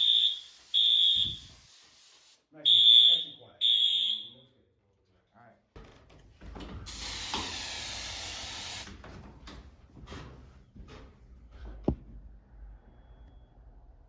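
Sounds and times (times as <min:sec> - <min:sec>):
aerosol spray hissing: 0:00.0 - 0:02.5, 0:06.9 - 0:09.0.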